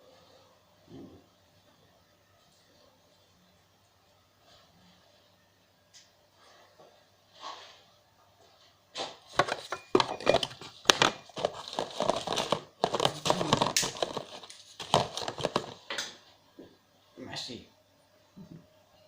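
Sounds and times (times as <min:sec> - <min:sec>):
objects rustling and clattering: 0:08.5 - 0:16.2.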